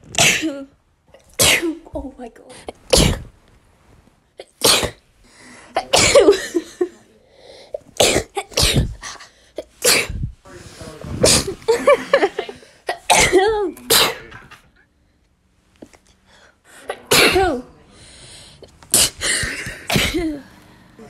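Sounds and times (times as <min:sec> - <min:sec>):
person sneezing: 0:07.8 - 0:10.4, 0:11.2 - 0:11.6, 0:12.9 - 0:14.5, 0:18.9 - 0:20.6.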